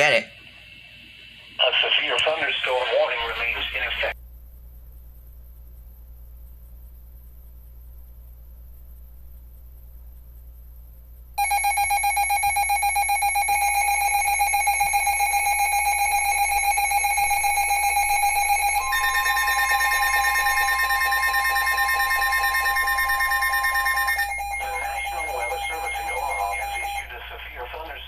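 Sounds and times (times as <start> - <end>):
steady higher alarm tone: 11.4 - 27.2
rapidly pulsing electronic beep: 11.4 - 27.4.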